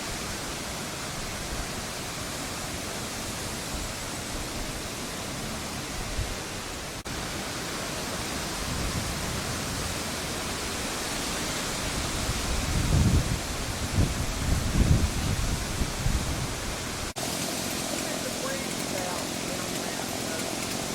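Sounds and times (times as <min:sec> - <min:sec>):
floodwater rushing: 0:00.0 - 0:20.9.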